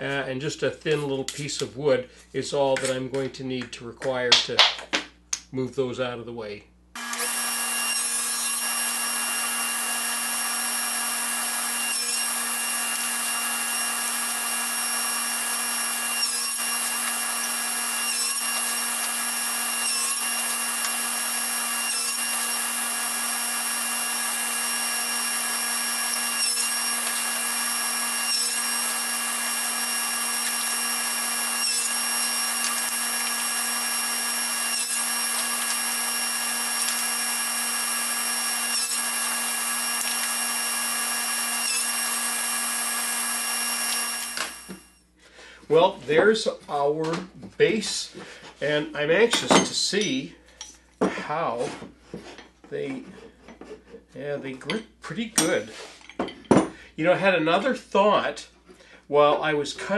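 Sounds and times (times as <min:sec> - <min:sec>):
power tool cutting wood: 0:07.0 - 0:45.0.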